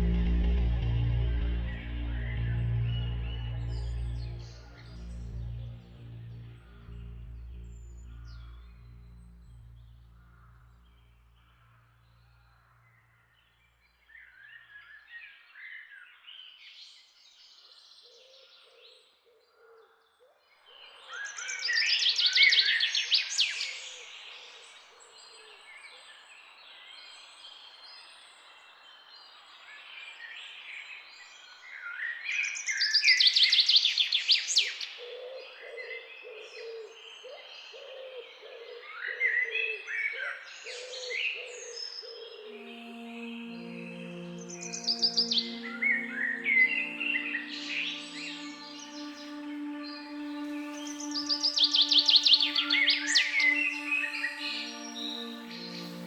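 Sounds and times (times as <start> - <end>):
low repeated bird notes: 0.0 - 12.2, 42.4 - 56.0.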